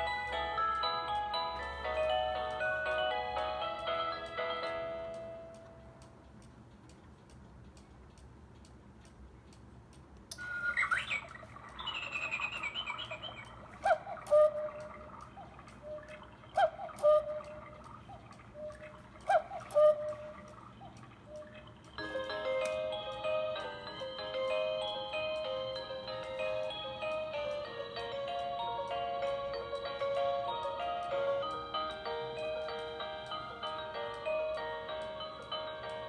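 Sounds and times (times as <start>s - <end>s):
clock ticking softly: 0.0s - 36.0s
electronic cuckoo call: 10.3s - 36.0s
recorded birdsong chirps: 10.3s - 36.0s.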